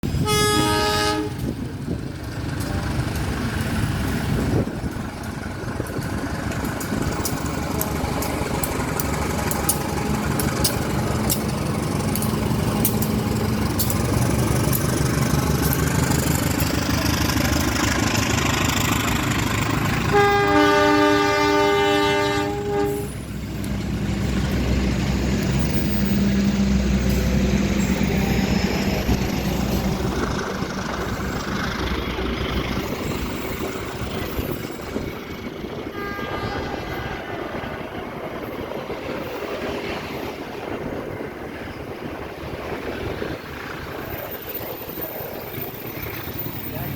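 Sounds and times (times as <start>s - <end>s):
passing train rumbling: 0.0s - 46.9s
train horn chord: 0.2s - 1.5s, 20.0s - 23.2s, 35.9s - 37.6s.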